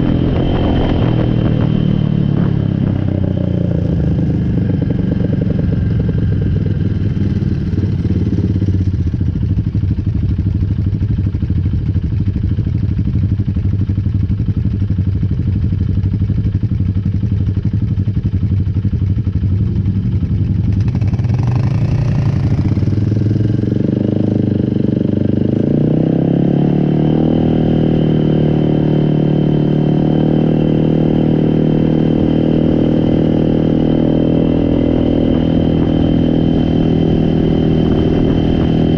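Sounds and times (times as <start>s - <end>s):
atv engine running: 0.0s - 38.9s.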